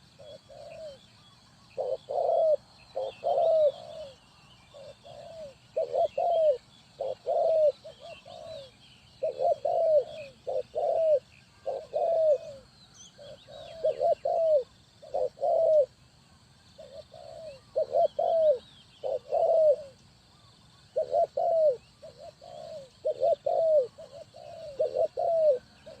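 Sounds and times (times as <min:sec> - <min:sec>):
dove cooing: 0:00.0 - 0:16.0, 0:16.7 - 0:26.0
small birds chirping: 0:00.0 - 0:26.0.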